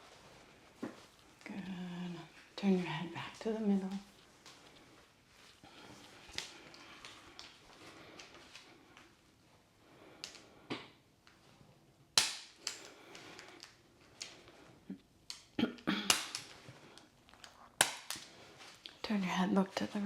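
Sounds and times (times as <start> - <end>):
neck joints cracking: 12.2 - 19.0.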